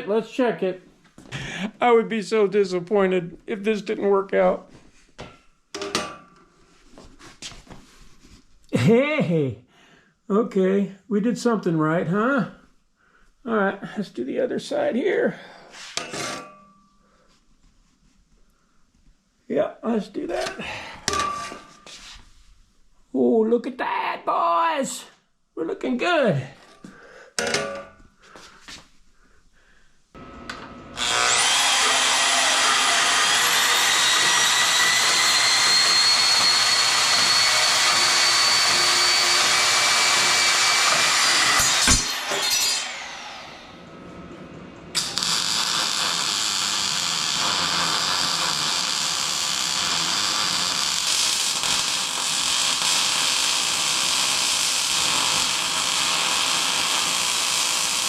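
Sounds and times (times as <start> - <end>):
power tool whining: 30.2 - 43.8, 45.0 - 58.0.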